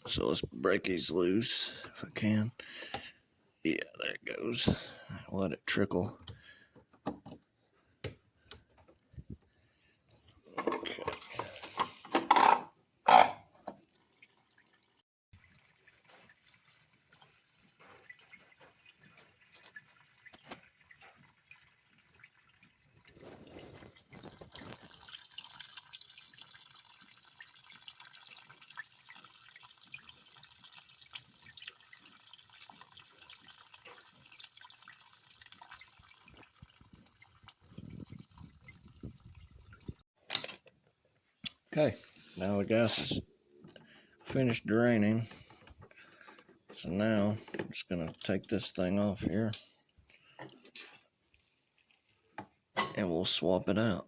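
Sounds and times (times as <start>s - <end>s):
fuel trickling and dripping: 13.4s - 40.0s.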